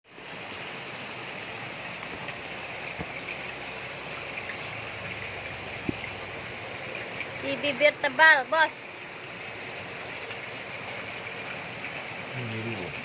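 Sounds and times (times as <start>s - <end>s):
running water rushing: 0.0s - 13.0s
faint knock: 5.8s - 6.1s.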